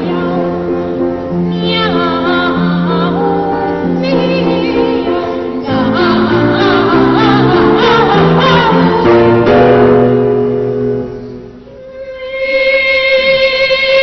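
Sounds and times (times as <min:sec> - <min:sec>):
instrumental accompaniment: 0:00.0 - 0:13.5
boys choir singing: 0:01.6 - 0:09.9.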